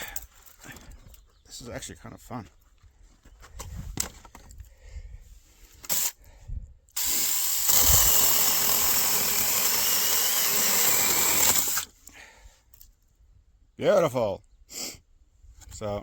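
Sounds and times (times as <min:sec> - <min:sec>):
electric chainsaw running: 0:07.0 - 0:11.9.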